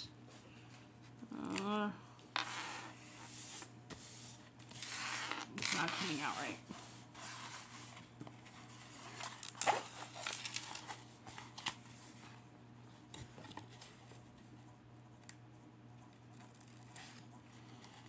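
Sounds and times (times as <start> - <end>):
plastic film crinkling: 9.1 - 11.8.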